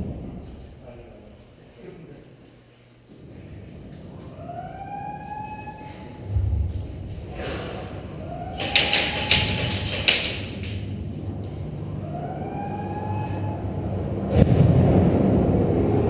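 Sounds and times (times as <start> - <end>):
siren wailing: 4.1 - 6.7, 8.0 - 10.2, 11.7 - 14.4
low rumble: 5.8 - 8.6, 9.5 - 16.0
knocks and rustling: 8.6 - 11.0.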